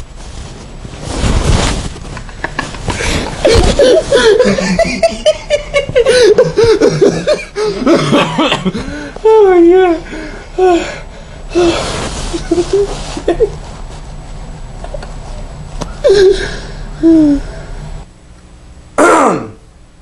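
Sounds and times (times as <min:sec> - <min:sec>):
young people laughing and calling: 0:02.4 - 0:09.8.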